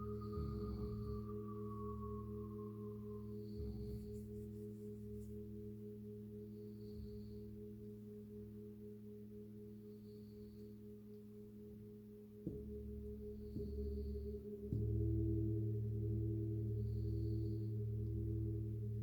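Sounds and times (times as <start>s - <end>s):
singing bowls ringing: 0.0s - 3.8s.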